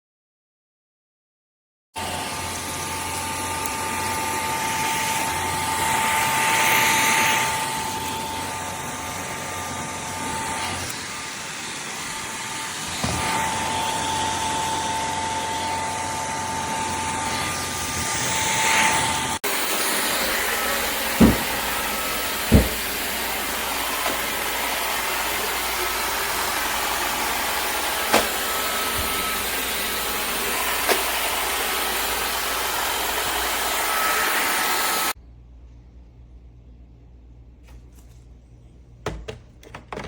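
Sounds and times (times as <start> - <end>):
vacuum cleaner running: 2.0 - 35.2
short knocks: 21.2 - 21.7.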